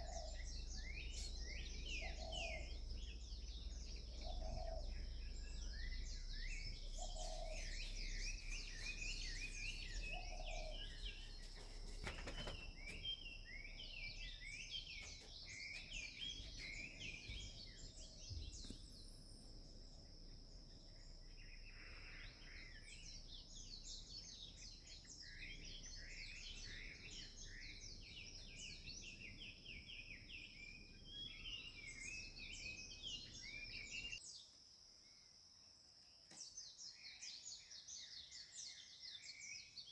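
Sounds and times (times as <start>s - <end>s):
low rumble: 0.0s - 11.5s
birds chirping and singing: 0.0s - 34.3s.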